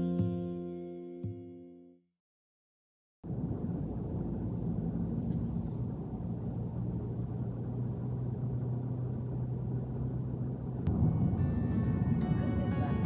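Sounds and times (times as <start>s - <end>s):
vehicle engine rumble: 3.2s - 13.0s.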